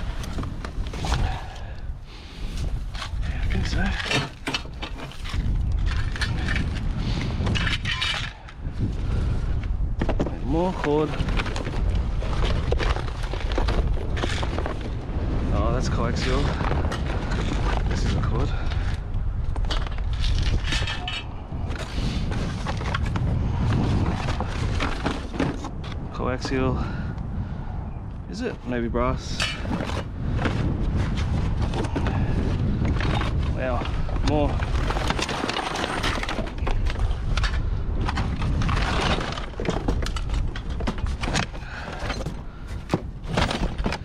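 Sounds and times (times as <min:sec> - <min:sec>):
steady low rumble: 0:00.0 - 0:43.2
cables and metal clattering: 0:02.9 - 0:08.7, 0:15.8 - 0:26.8, 0:29.1 - 0:44.0.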